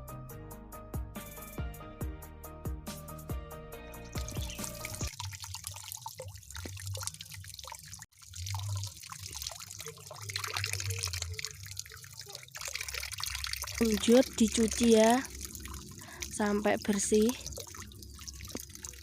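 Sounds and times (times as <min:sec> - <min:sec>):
background music: 0:00.0 - 0:05.1
water trickling and splashing: 0:04.0 - 0:19.0.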